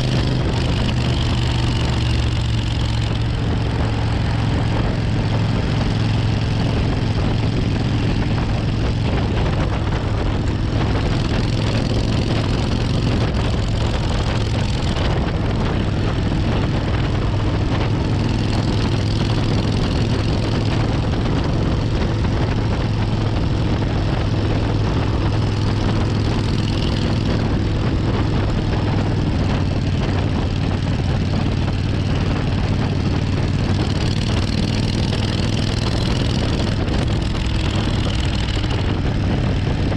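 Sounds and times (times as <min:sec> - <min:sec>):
motorcycle engine running: 0:00.0 - 0:39.9
road noise: 0:00.0 - 0:39.9
wind noise: 0:00.0 - 0:39.9.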